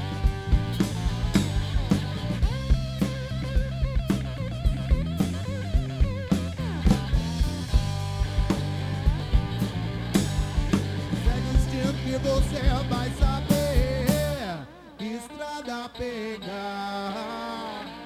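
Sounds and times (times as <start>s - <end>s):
rock band playing: 0.0s - 14.5s
electric guitar bent notes: 0.0s - 14.6s.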